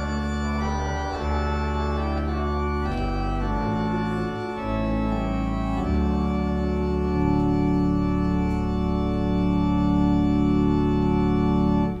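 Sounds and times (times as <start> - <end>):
church organ chords: 0.0 - 12.0.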